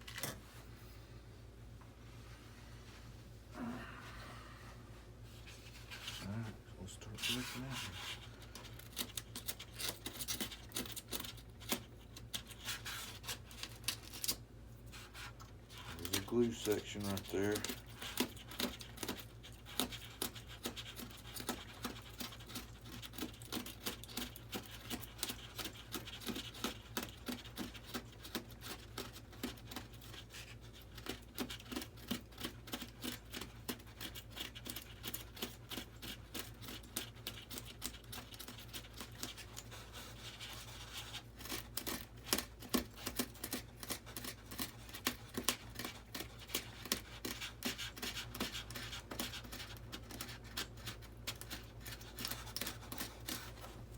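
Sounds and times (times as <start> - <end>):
sandpaper scratching on foam: 14.9 - 31.8.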